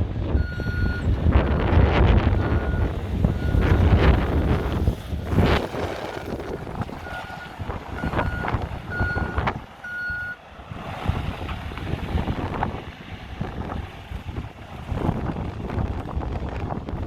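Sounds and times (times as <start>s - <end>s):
diesel engine running: 0.0s - 17.0s
reversing alarm beeping: 0.4s - 4.8s, 7.0s - 10.4s.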